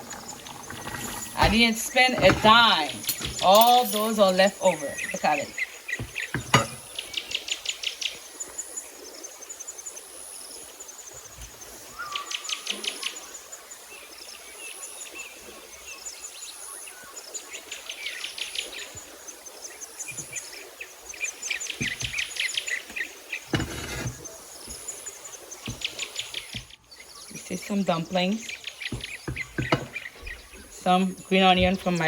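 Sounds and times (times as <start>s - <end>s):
dull bump: 28.9s - 30.8s.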